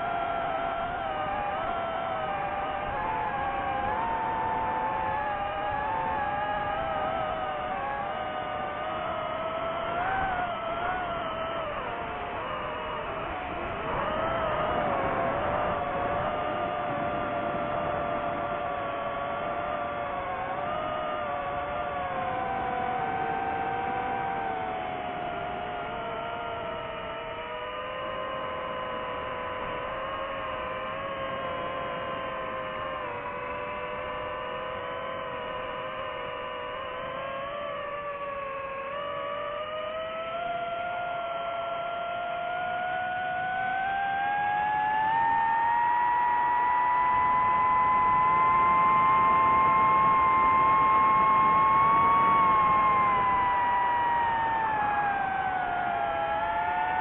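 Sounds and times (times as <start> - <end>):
drone propellers whining: 0.0 - 57.0.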